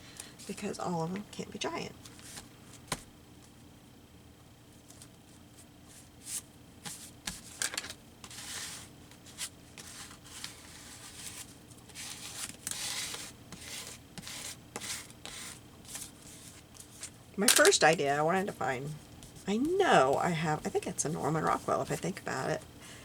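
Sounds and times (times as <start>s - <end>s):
paper rustling and rubbing: 4.8s - 17.2s.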